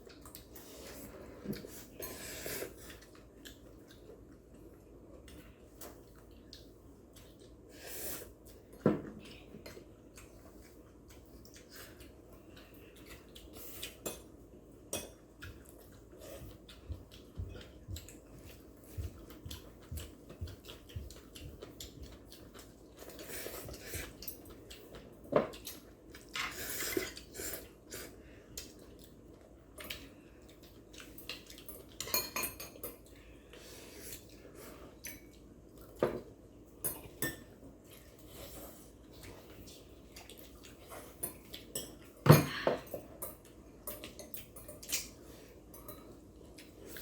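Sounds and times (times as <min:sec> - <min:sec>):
utensils clinking on plates: 0:31.7 - 0:33.0.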